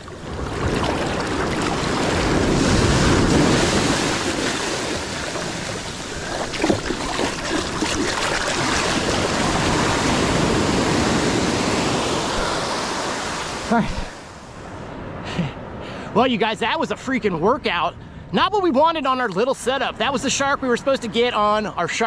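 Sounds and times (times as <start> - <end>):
sharp knocks or splashes: 0.0 - 9.8
wind buffeting microphone: 0.0 - 13.6
ocean surf: 0.0 - 22.0.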